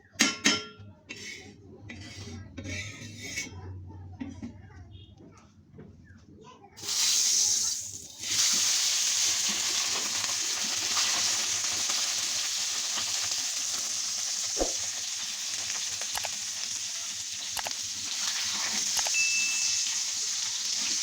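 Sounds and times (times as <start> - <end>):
fish sizzling in hot oil: 6.8 - 21.0.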